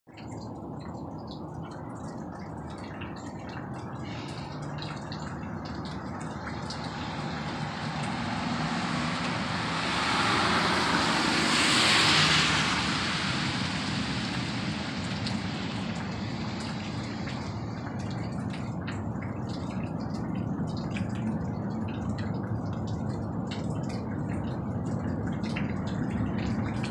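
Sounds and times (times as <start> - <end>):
faint drip-like ticks: 0.1 - 26.9
rushing rumble from the sky: 0.2 - 26.9
low hum: 0.4 - 21.3.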